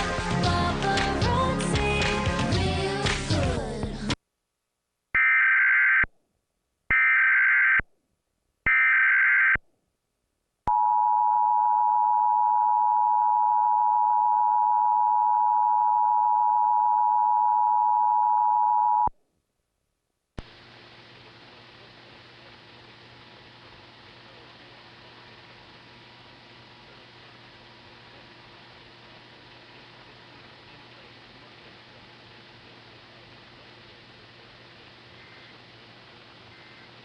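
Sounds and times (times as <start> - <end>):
faint hum: 10.0 - 37.0.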